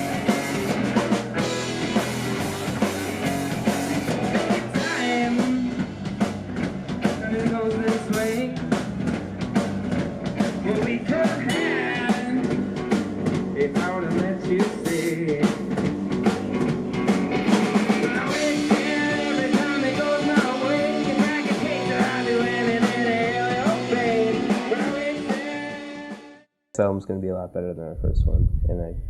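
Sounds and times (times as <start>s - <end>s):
electric guitar: 0.0s - 26.2s
drum kit: 0.0s - 27.0s
person singing: 4.4s - 5.8s, 7.2s - 8.6s, 10.6s - 12.6s, 13.6s - 15.6s, 18.0s - 25.9s.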